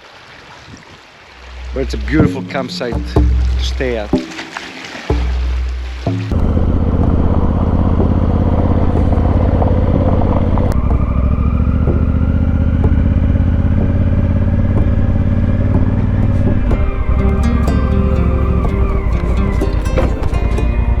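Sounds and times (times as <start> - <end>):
motorcycle engine running: 5.1 - 21.0.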